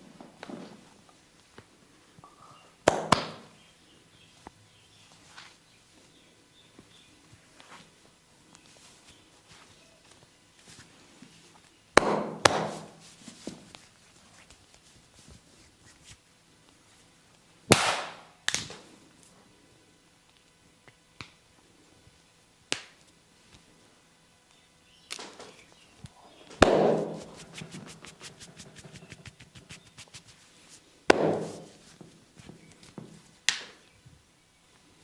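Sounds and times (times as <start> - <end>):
hands slapping bare skin: 2.8 - 3.5, 12.0 - 13.0, 22.7 - 23.1, 26.6 - 30.4, 31.1 - 32.0
light tapping on skin: 26.9 - 30.4.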